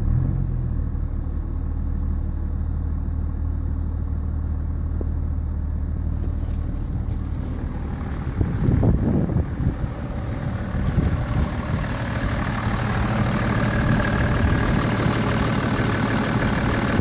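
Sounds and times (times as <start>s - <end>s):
diesel engine idling: 0.0s - 17.0s
engine knocking: 7.9s - 17.0s.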